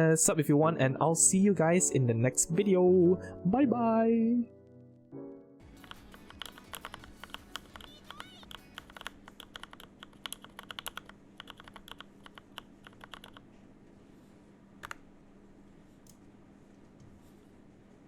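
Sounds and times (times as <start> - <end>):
mechanical keyboard typing: 5.7 - 13.4, 14.8 - 15.0.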